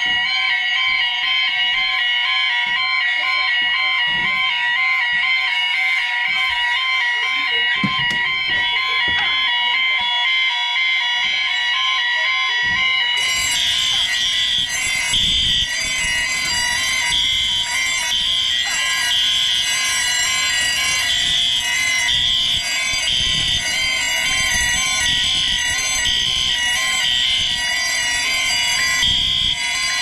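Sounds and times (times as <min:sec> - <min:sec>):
fire alarms sounding: 0:00.0 - 0:30.0.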